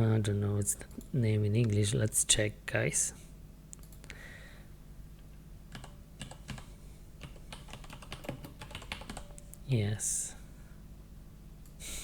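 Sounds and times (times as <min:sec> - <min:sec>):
typing on computer keyboard: 0:05.7 - 0:09.4.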